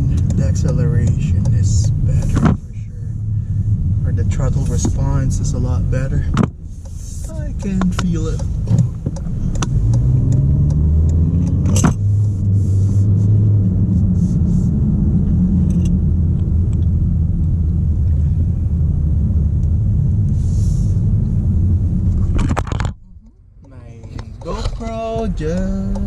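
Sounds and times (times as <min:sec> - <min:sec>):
sharp clicks and knocks: 0:00.0 - 0:02.7, 0:06.3 - 0:12.4, 0:22.1 - 0:26.0
car engine accelerating: 0:00.0 - 0:26.0.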